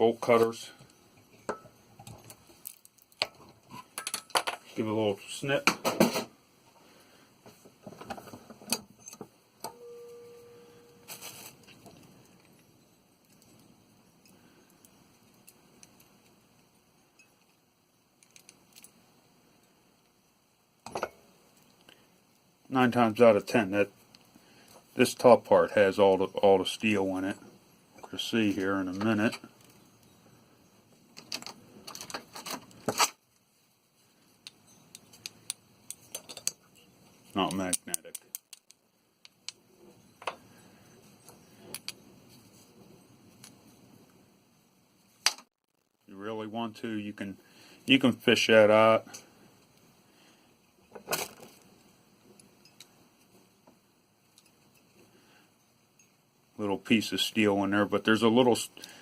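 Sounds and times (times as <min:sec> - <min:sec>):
metal ringing tone: 0:09.7 - 0:11.1
metal parts clicking and scraping: 0:31.2 - 0:33.2, 0:34.4 - 0:39.6.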